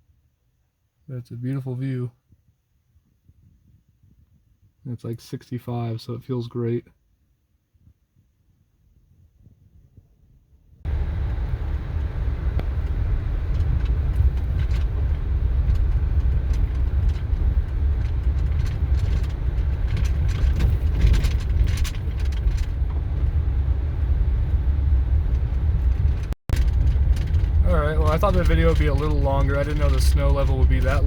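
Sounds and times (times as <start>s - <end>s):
off-road vehicle engine rumble: 10.9s - 31.0s
knocks and rattles: 12.6s - 23.4s, 25.3s - 31.0s.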